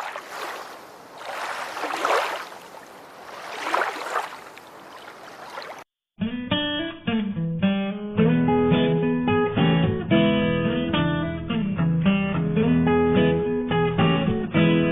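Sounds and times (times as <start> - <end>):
acoustic guitar music: 6.2 - 14.9.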